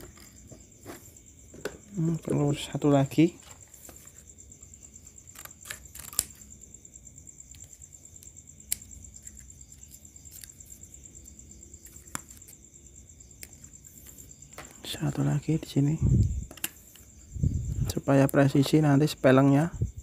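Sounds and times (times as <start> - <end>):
small parts clicking and tapping: 7.5 - 10.8.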